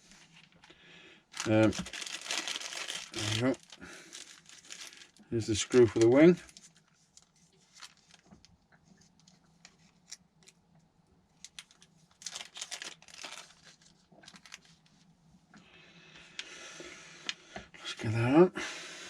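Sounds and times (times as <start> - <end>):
plastic packaging crinkling: 1.3 - 8.5, 11.4 - 15.0.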